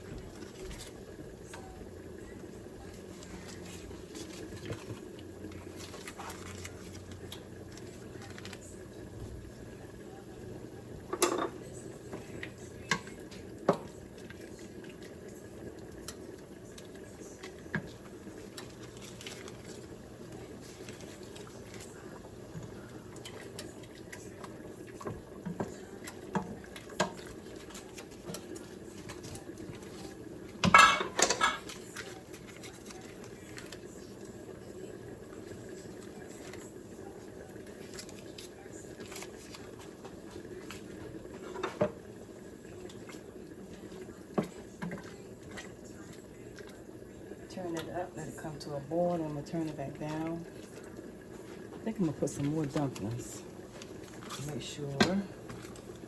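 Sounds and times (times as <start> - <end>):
spoon and pot clattering: 11.1 - 11.7, 30.6 - 32.0.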